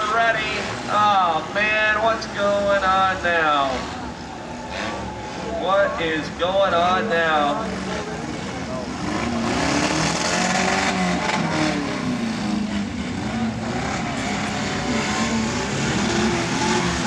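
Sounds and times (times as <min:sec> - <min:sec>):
race car engines: 0:00.0 - 0:17.0.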